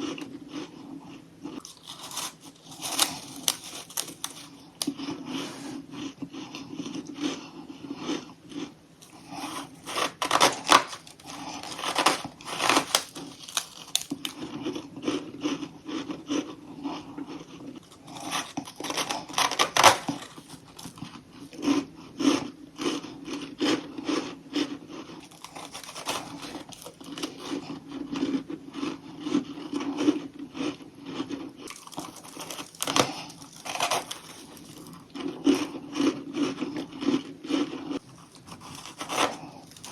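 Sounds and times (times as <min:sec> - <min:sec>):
crunching frost being bitten: 0:01.5 - 0:05.5, 0:09.0 - 0:14.8, 0:17.8 - 0:21.8, 0:22.8 - 0:28.4, 0:31.6 - 0:39.9.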